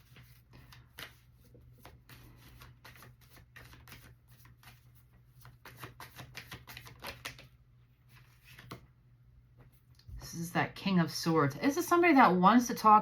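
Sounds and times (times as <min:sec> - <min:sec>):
cards being shuffled: 0:00.0 - 0:08.9.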